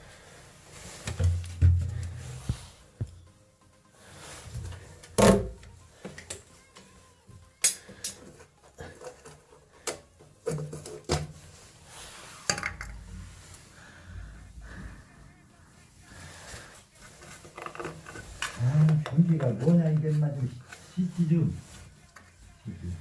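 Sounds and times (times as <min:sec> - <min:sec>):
rubbing and shuffling: 0:10.7 - 0:23.0.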